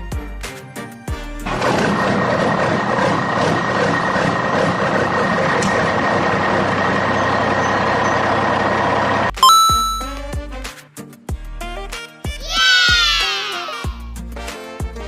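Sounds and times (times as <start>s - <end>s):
engine-like noise with high whine: 1.6s - 9.3s.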